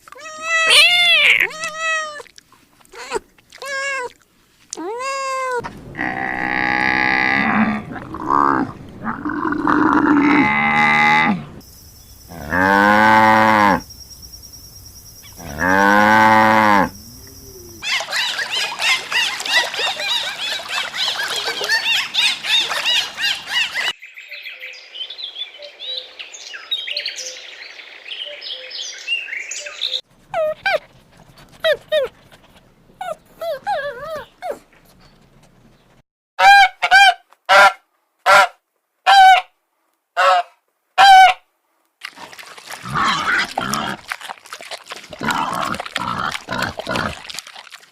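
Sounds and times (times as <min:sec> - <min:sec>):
cattle mooing: 0:06.0 - 0:11.5, 0:12.4 - 0:13.8, 0:15.4 - 0:17.8.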